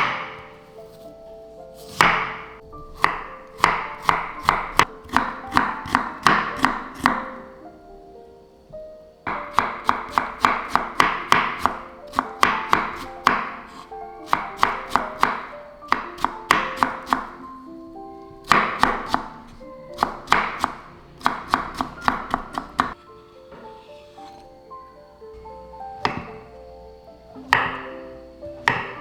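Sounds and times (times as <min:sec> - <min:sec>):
knife chopping on cutting board: 0:00.0 - 0:00.5, 0:01.8 - 0:07.4, 0:09.3 - 0:17.4, 0:18.4 - 0:24.4, 0:26.0 - 0:26.4, 0:27.5 - 0:27.8, 0:28.6 - 0:29.0
soft background music: 0:00.0 - 0:29.0.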